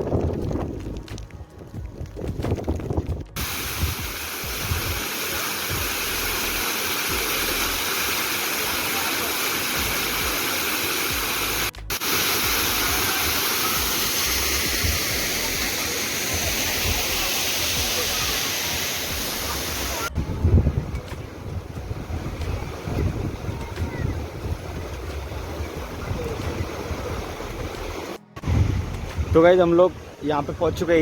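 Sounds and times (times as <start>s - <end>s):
wind buffeting microphone: 0.0s - 5.0s, 20.1s - 31.0s
waterfall rushing: 3.4s - 20.4s, 21.2s - 31.0s.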